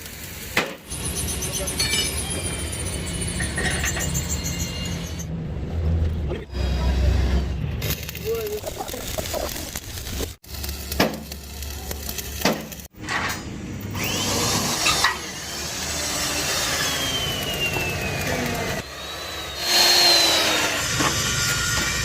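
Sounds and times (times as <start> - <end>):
tool sawing metal: 13.9 - 22.0.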